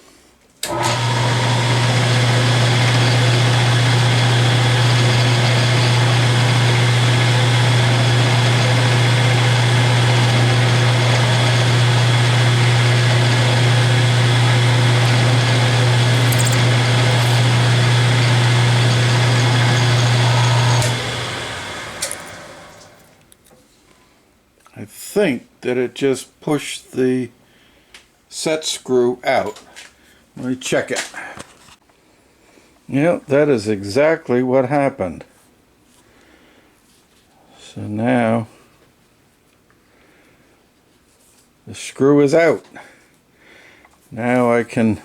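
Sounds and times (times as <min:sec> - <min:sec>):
milling machine spindle humming: 0:00.7 - 0:23.1.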